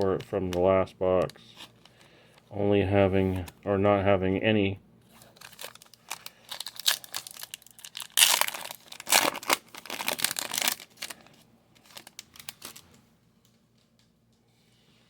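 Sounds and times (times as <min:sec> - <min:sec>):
wrapper tearing and crinkling: 0:05.2 - 0:13.0.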